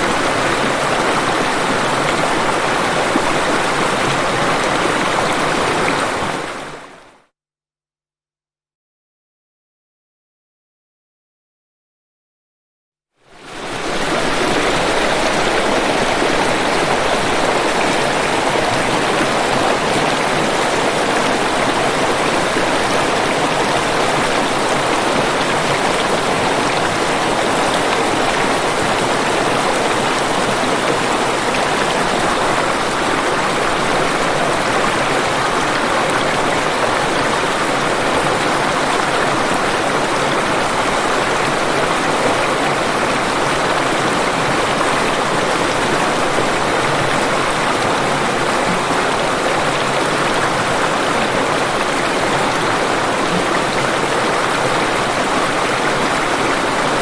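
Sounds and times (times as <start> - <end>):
waterfall rushing: 0.0 - 7.0, 13.3 - 57.0.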